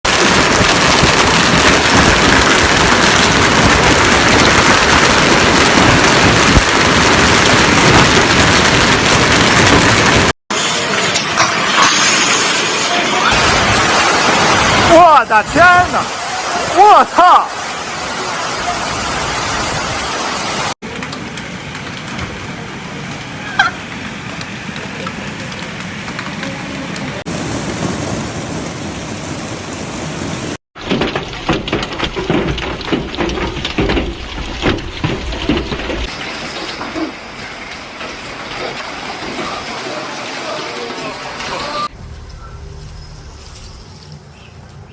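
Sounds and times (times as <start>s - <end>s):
hail pounding on surfaces: 0.1s - 10.4s, 13.3s - 15.9s, 20.8s - 27.3s, 30.8s - 41.7s.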